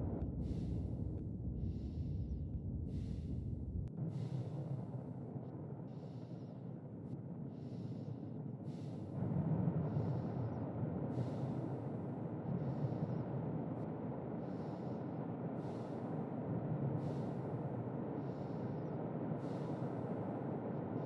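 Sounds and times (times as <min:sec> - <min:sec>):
sleeping person breathing: 0:14.4 - 0:21.0.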